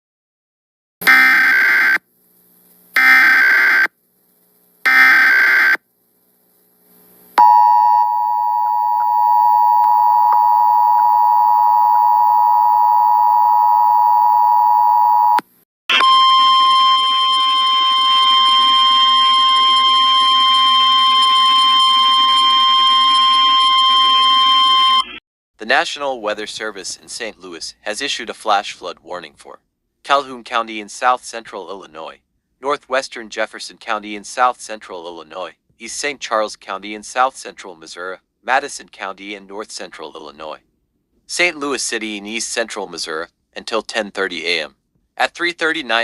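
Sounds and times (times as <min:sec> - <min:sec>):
two-tone attention signal: 0:07.4 - 0:25.2.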